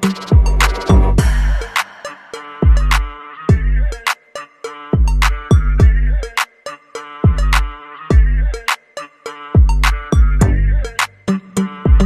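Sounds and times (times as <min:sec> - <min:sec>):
deep bass drum hits: 0:00.4 - 0:01.7, 0:02.6 - 0:03.7.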